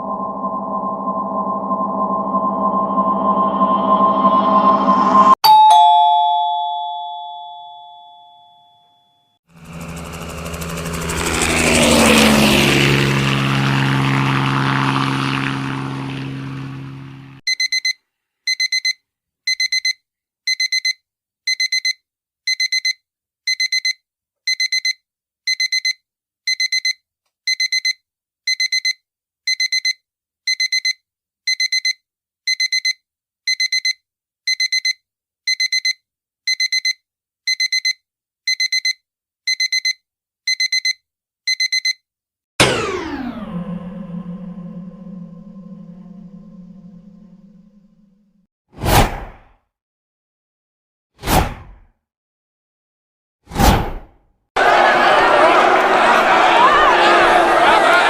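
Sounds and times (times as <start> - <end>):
doorbell chime: 0.0 - 9.0
alarm clock double beeps: 17.5 - 42.0.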